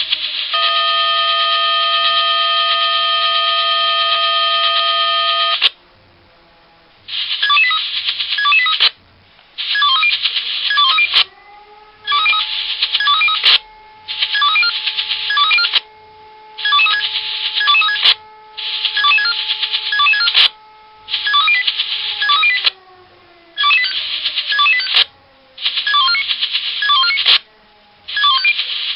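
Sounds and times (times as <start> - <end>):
pager rapid beeping melody: 0.5 - 5.6, 7.4 - 8.8, 9.7 - 11.2, 12.1 - 15.8, 16.6 - 22.7, 23.6 - 25.1, 25.8 - 27.3, 28.1 - 28.6
faint siren winding: 12.0 - 15.9, 16.6 - 22.8, 23.6 - 25.1
pager steady chord: 13.6 - 22.2.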